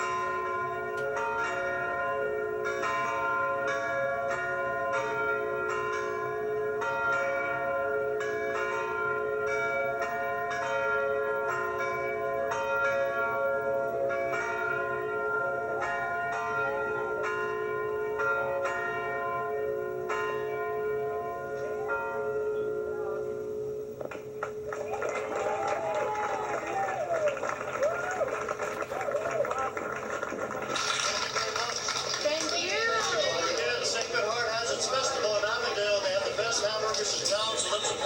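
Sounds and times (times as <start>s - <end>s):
church bells ringing: 0.0s - 24.7s, 32.3s - 38.0s.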